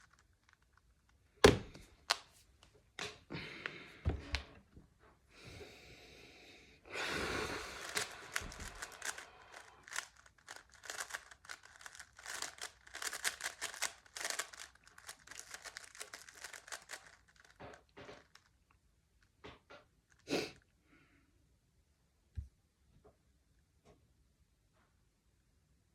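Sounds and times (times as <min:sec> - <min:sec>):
puzzle cube clicking twists: 0:00.0 - 0:01.3, 0:07.5 - 0:18.6.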